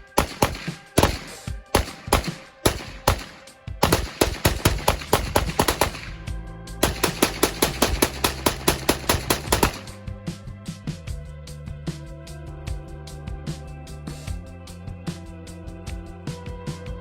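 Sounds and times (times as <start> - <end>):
semi-automatic gunfire: 0.0 - 10.0
background music with bass line: 0.0 - 17.0.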